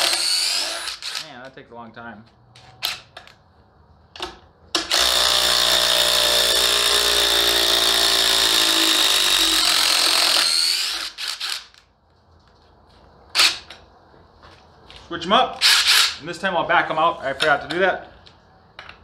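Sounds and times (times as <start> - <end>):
impact driver hammering screw into wood: 4.2 - 11.7.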